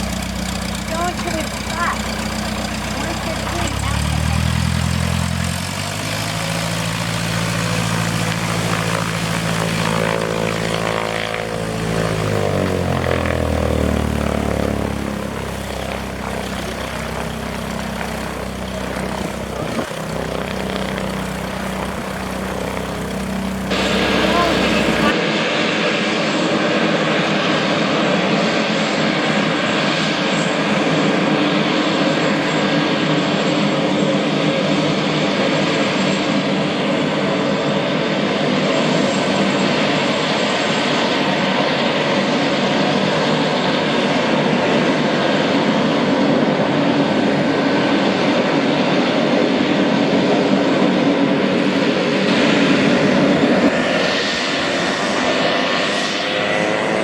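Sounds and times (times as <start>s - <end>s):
aircraft engine running: 0.0s - 57.0s.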